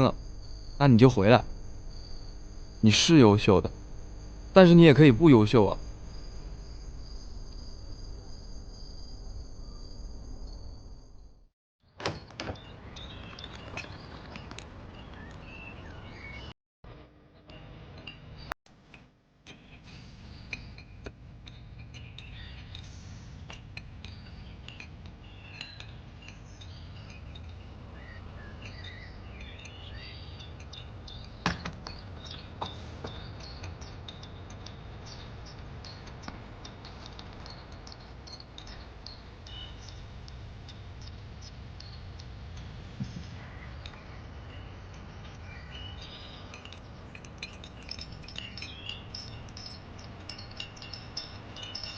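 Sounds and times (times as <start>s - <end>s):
light clinks and clicks: 20.5s - 51.9s
faint high chirps: 24.0s - 42.4s, 43.0s - 51.9s.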